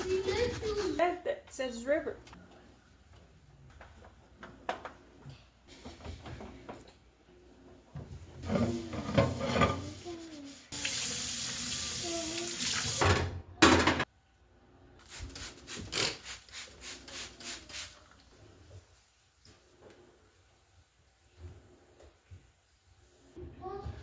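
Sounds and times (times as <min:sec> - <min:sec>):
water running from a tap: 0:10.7 - 0:13.1.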